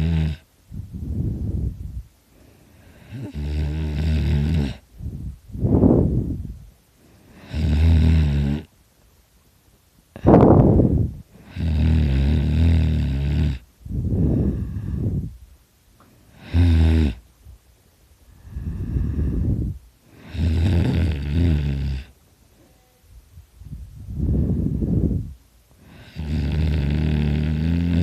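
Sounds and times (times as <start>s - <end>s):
person snoring loudly: 0.0s - 0.4s, 2.9s - 4.8s, 7.3s - 8.7s, 11.4s - 13.6s, 16.4s - 17.2s, 20.2s - 22.1s, 25.8s - 28.0s.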